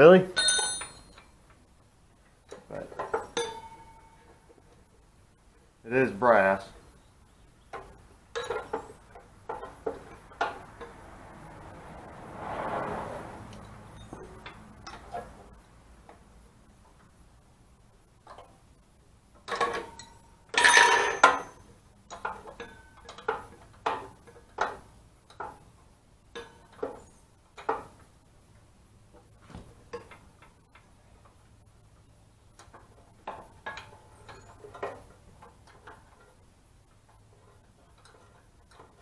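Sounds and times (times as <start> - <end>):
metal tools clattering: 0.4 - 1.2, 19.5 - 21.7
metallic clicks and knocks: 2.2 - 4.9, 7.7 - 11.9, 13.5 - 17.2, 19.3 - 28.1, 29.1 - 31.6, 32.5 - 39.0.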